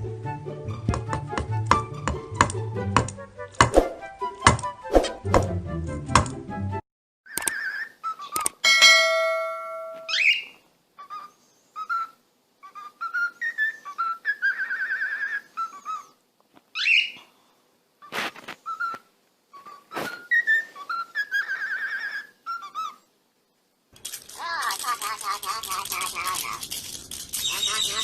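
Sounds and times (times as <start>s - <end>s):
sharp clicks: 7.3s - 7.6s, 8.3s - 8.6s
parrot whistling and chirping: 7.3s - 8.4s, 10.0s - 16.1s, 16.8s - 17.2s, 18.6s - 23.0s, 27.4s - 28.0s
ringing tone: 8.6s - 10.4s.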